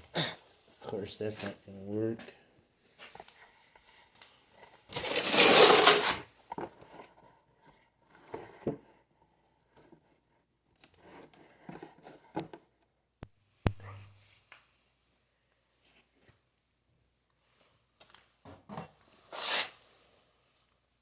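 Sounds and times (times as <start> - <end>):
tools rattling scrape: 4.9 - 6.2.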